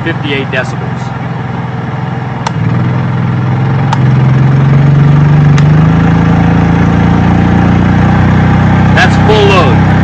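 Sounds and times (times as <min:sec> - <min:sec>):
generator engine running: 0:00.0 - 0:10.0.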